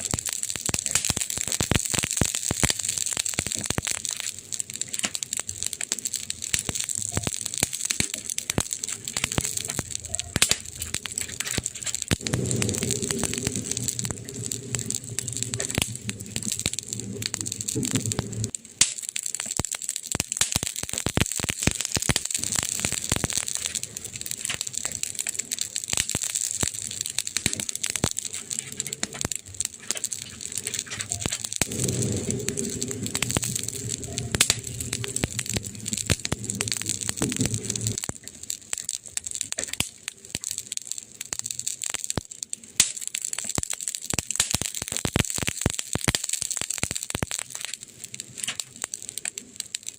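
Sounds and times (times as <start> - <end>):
wood fire crackling: 0.0 - 49.9
low rumble: 8.5 - 18.5, 28.0 - 38.1.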